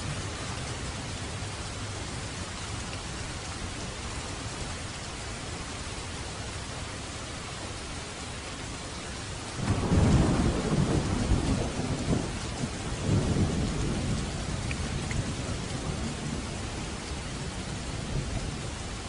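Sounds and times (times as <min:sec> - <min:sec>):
steady rain falling: 0:00.0 - 0:19.0
thunder rumbling: 0:09.6 - 0:19.0.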